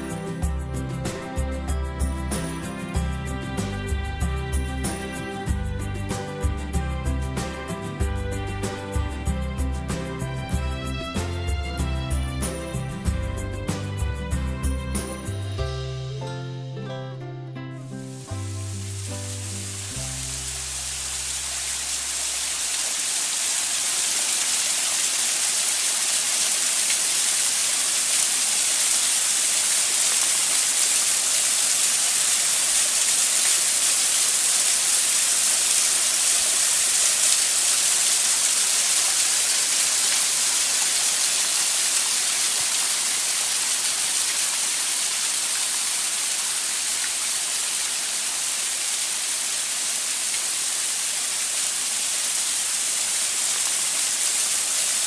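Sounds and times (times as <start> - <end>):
waterfall rushing: 0.0 - 16.8, 17.9 - 55.0
music notes: 0.0 - 22.6.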